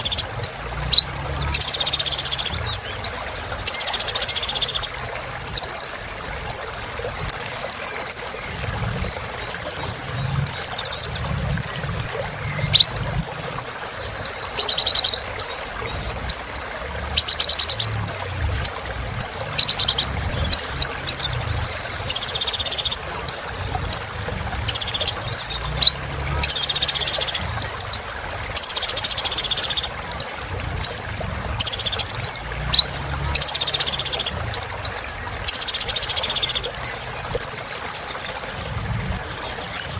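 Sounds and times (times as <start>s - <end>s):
sunbird singing: 0.0s - 6.7s, 7.3s - 39.9s.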